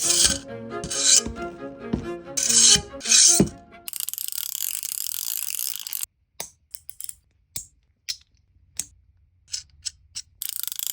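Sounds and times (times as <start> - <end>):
plastic ratchet clicking: 2.4 - 6.1, 9.5 - 10.9.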